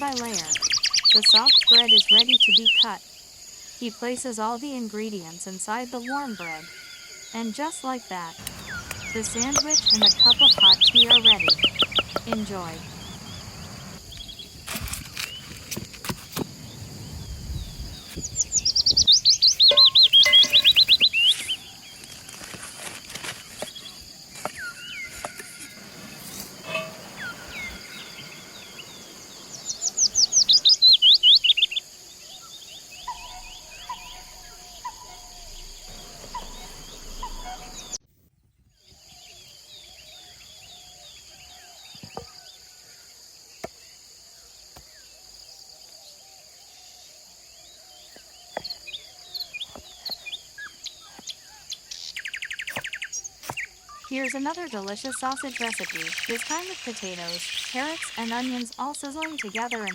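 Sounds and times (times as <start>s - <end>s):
songbird trilling: 0.0s - 3.0s, 5.7s - 14.6s, 17.2s - 22.1s, 23.6s - 38.0s, 48.5s - 59.9s
soft bird chirps: 0.0s - 4.1s, 5.7s - 22.6s, 23.4s - 38.0s
insects droning: 0.0s - 38.0s, 38.7s - 59.9s.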